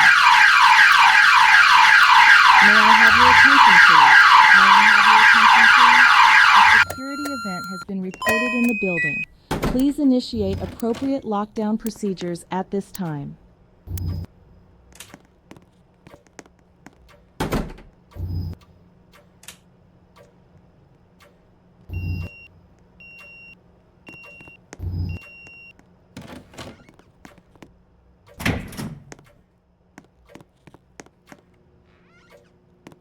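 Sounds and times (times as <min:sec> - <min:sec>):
short electronic beeps: 0:06.4 - 0:09.3.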